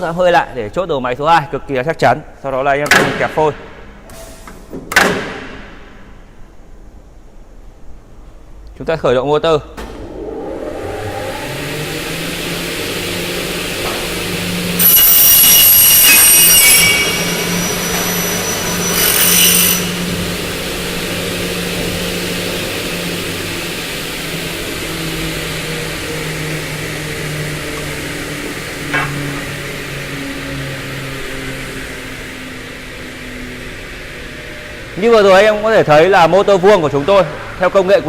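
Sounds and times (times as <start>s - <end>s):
saw motors humming: 9.9s - 38.0s
saw blade screeching through aluminium: 14.7s - 20.4s.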